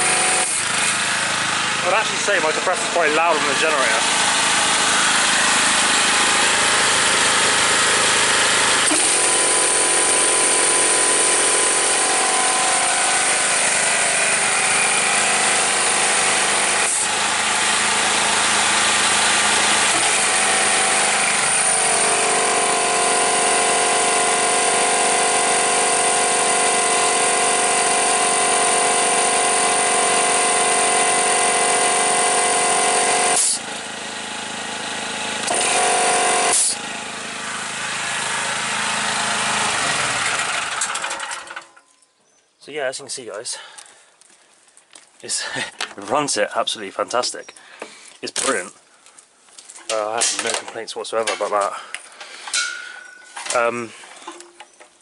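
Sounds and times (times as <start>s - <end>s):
air compressor rattling: 0.0s - 41.8s, 49.8s - 54.7s
generator engine running: 0.0s - 41.8s.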